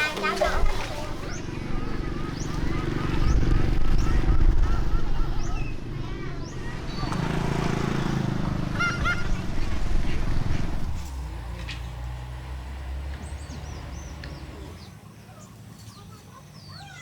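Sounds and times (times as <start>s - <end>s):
motor engine running: 0.0s - 16.9s
bird chirps: 13.2s - 17.0s.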